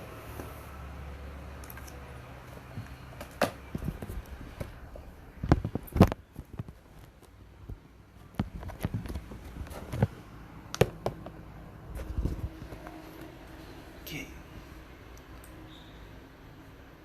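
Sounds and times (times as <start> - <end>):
knocks and clicks from handling objects: 10.8 - 11.4.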